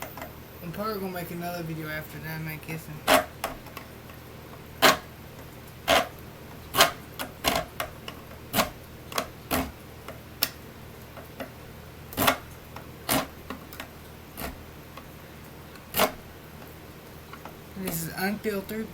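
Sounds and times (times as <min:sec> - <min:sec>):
small parts clicking and tapping: 0:03.1 - 0:11.5.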